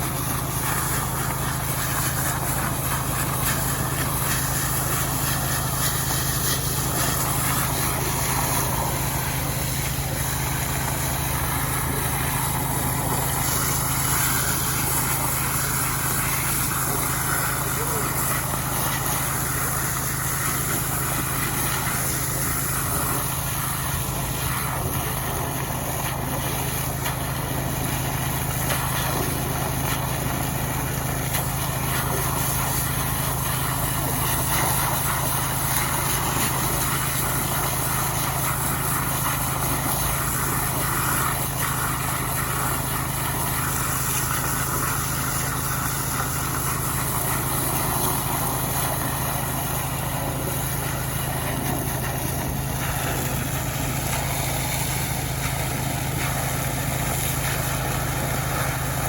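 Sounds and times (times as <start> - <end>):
small petrol engine running: 0.0 - 59.0.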